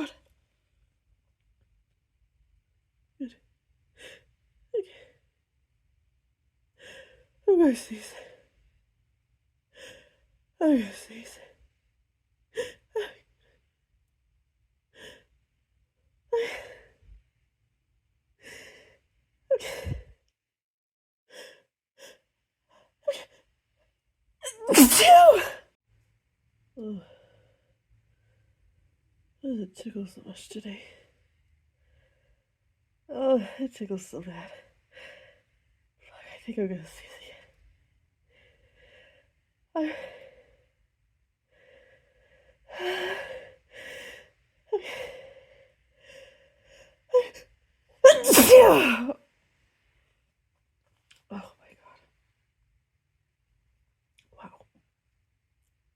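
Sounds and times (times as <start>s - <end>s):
person sneezing: 24.5s - 25.6s, 48.1s - 49.1s.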